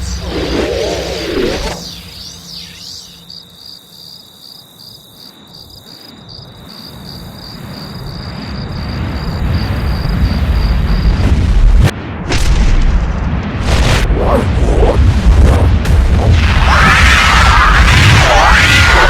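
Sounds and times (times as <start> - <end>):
low rumble: 0.0 - 3.2, 8.2 - 19.0
cricket chirping: 0.0 - 11.2.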